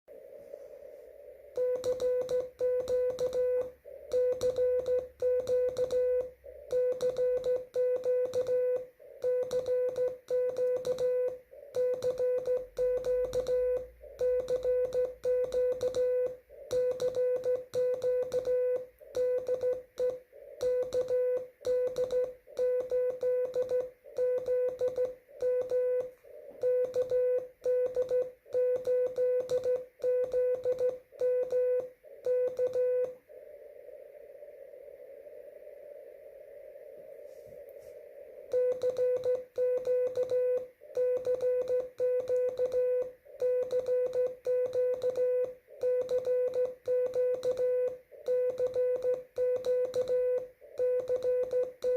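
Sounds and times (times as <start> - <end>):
radio hiss: 0.1 - 2.0, 26.1 - 26.6, 33.1 - 38.5
morse code tone: 1.5 - 33.2, 38.5 - 51.9.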